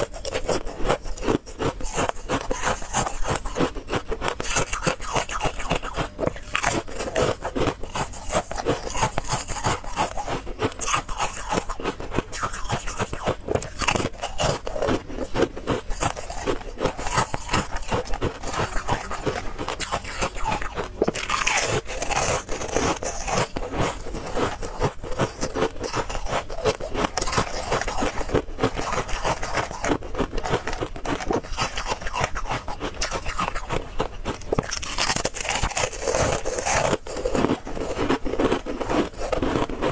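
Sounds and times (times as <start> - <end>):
person crunching ice: 0.0 - 39.9.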